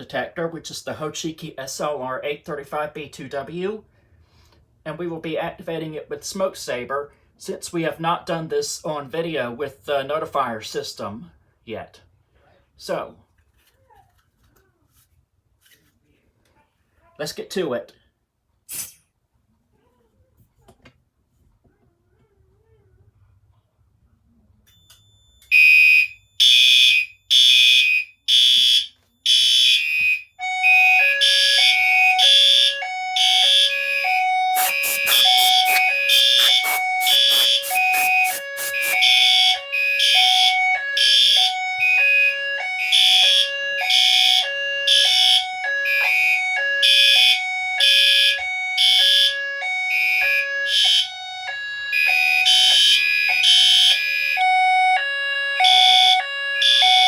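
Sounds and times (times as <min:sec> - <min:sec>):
fire alarm horn pulses: 0:25.5 - 0:57.0
hi-lo two-tone alarm signal: 0:30.4 - 0:55.0, 0:55.6 - 0:57.0.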